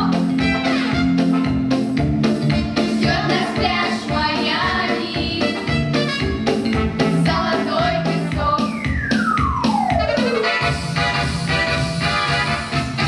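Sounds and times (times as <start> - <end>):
music with beat and bass line: 0.0 - 13.0.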